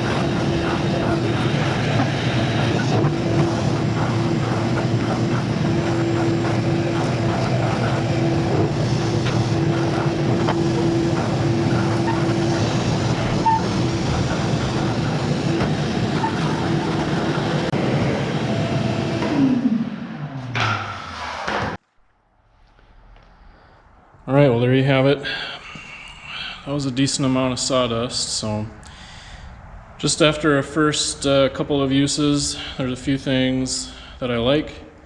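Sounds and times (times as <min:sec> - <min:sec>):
shop vacuum running: 0:00.0 - 0:21.8.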